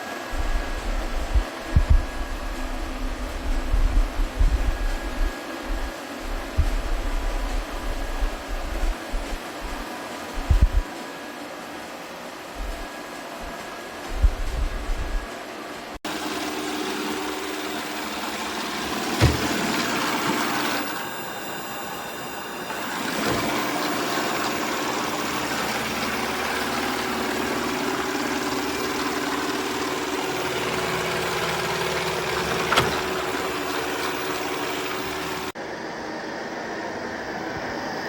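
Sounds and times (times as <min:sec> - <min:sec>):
robot vacuum whirring: 0:00.0 - 0:11.7, 0:12.3 - 0:35.6.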